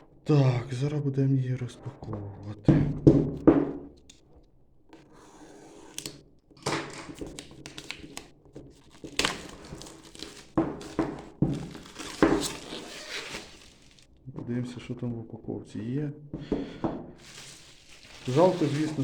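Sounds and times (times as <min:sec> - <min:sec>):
cardboard rustling and crinkling: 0:06.9 - 0:14.2, 0:17.2 - 0:19.0
box knocks and thuds: 0:10.5 - 0:12.6.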